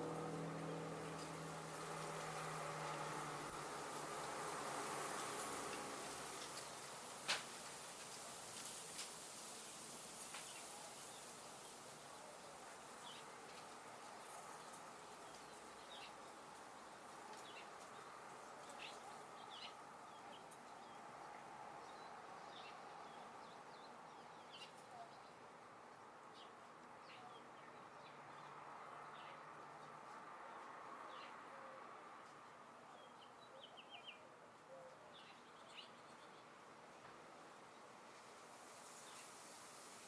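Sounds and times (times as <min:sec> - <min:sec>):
small birds chirping: 0:10.2 - 0:38.0, 0:38.8 - 0:39.4
steady soft hiss: 0:35.6 - 0:40.0.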